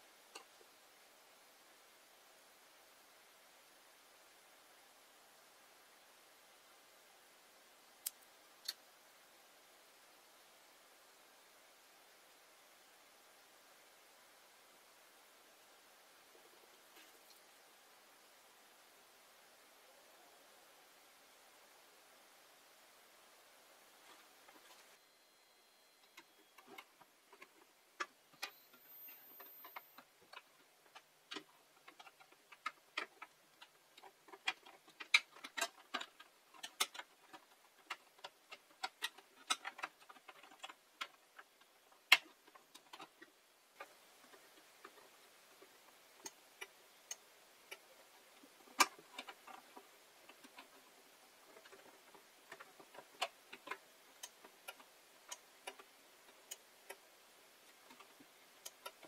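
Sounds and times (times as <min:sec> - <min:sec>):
clicks and taps of small parts: 0:29.6 - 0:43.2, 0:48.4 - 0:57.0, 0:57.7 - 0:59.0.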